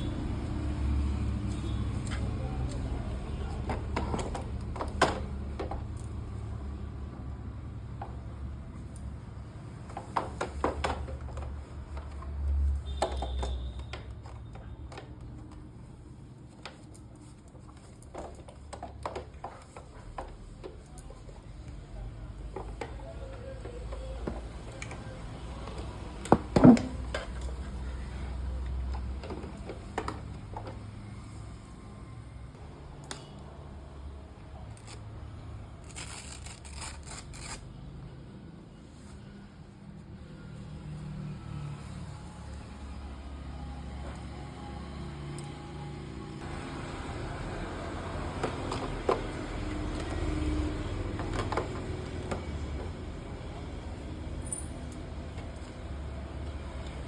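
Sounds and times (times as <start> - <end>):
handling clicks and knocks: 1.9 - 6.3, 7.9 - 15.9, 16.5 - 27.9, 28.6 - 30.9, 48.2 - 53.3.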